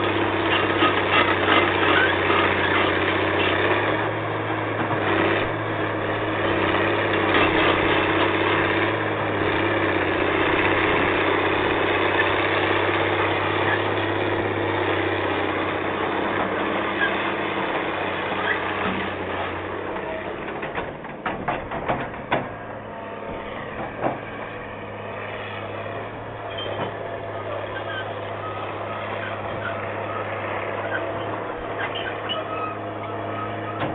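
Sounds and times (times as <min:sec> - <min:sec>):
excavator diesel engine running: 0:00.0 - 0:33.9
sharp metallic knocks: 0:20.7 - 0:24.5.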